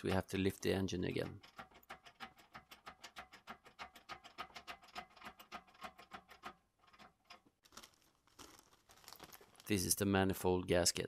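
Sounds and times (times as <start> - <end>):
ratchet clicking rapidly: 1.2 - 7.4.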